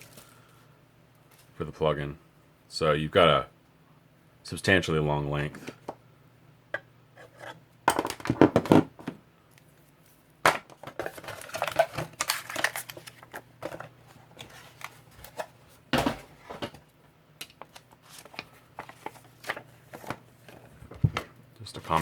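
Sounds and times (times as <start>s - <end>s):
packaging rustling and crinkling: 0.0s - 0.6s, 1.2s - 1.6s, 9.6s - 16.8s, 17.6s - 22.0s.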